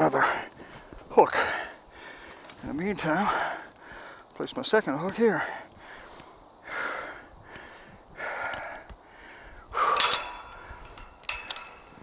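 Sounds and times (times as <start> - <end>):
heavy labored breathing: 0.0 - 4.4, 5.1 - 12.0
metal hook clinking on steel: 9.8 - 12.0.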